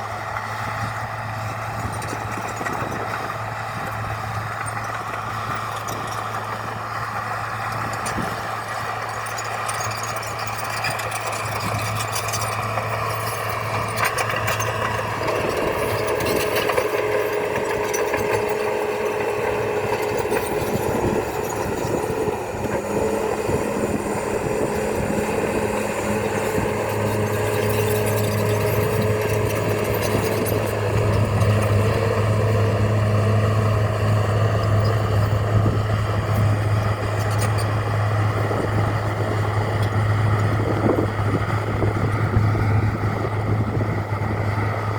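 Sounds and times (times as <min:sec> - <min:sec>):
bulldozer diesel engine running: 0:00.0 - 0:44.9
light clatter: 0:01.8 - 0:22.8, 0:26.2 - 0:32.3, 0:34.6 - 0:38.7.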